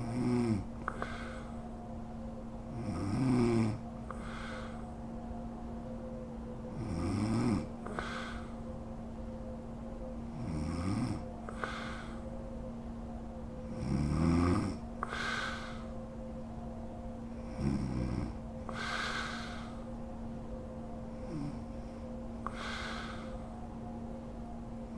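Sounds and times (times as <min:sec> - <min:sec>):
woman snoring: 0:00.0 - 0:01.6, 0:02.7 - 0:04.8, 0:06.8 - 0:08.6, 0:10.4 - 0:12.2, 0:13.8 - 0:15.9, 0:17.5 - 0:19.9, 0:21.2 - 0:21.7
background hum: 0:00.0 - 0:24.9.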